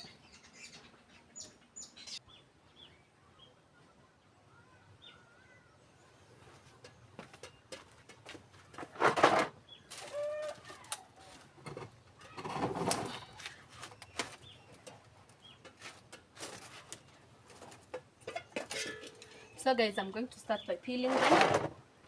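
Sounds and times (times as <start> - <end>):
rustles: 6.4 - 21.8.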